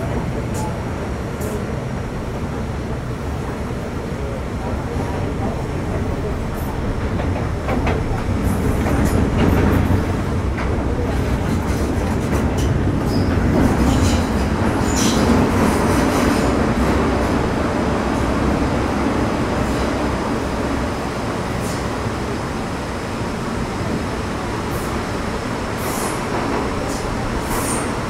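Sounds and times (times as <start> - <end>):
rail joint clicks: 0.0 - 1.9, 4.9 - 18.6
train wheels rumbling on track: 0.0 - 28.0.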